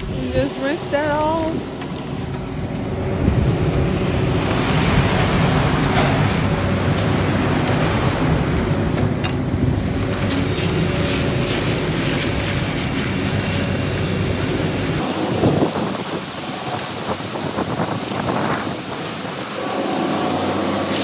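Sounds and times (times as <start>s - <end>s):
diesel engine running: 0.0s - 21.0s
hose spraying water: 0.2s - 1.6s, 10.0s - 21.0s.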